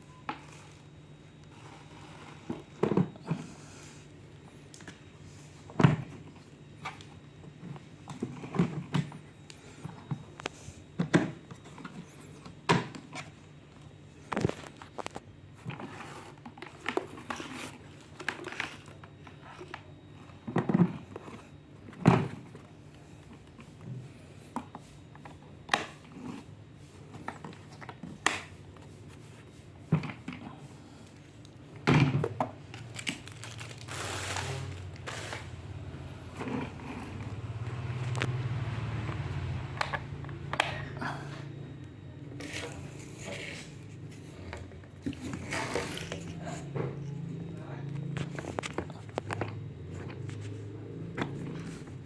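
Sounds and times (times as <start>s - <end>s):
plastic packaging crinkling: 32.7s - 35.6s.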